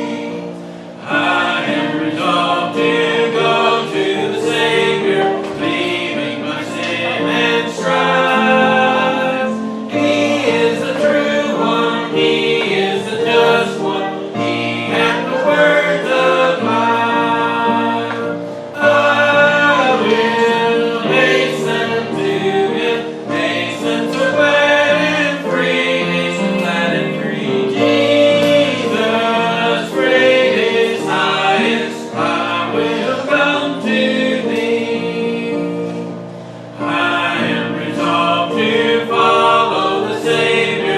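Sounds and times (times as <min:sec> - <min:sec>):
congregation singing a hymn: 0:00.0 - 0:40.9.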